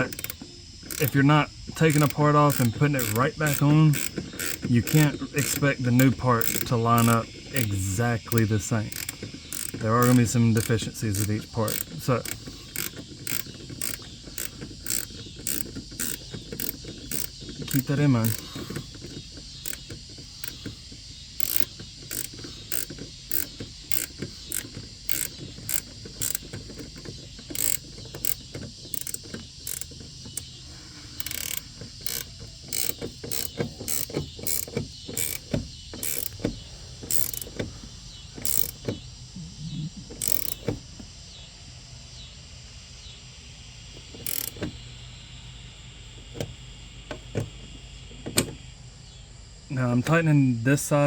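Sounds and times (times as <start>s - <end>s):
ratchet wrench clicking: 0.0s - 37.7s, 38.4s - 39.0s, 40.0s - 40.8s, 44.2s - 44.7s.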